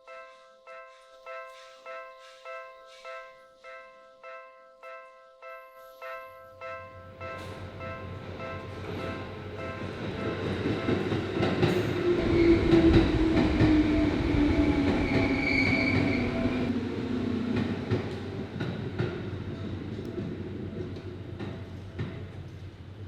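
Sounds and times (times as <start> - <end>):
level crossing bell ringing: 0.0 - 12.2
electric train rumble and whine: 6.3 - 23.0
high brake squeal: 13.9 - 16.7.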